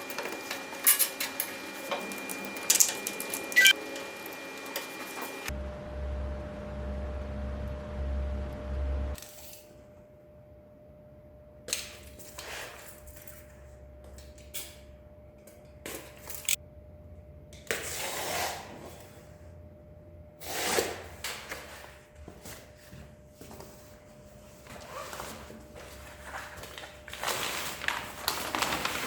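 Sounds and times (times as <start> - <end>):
faint steady hum: 12.8 - 17.8.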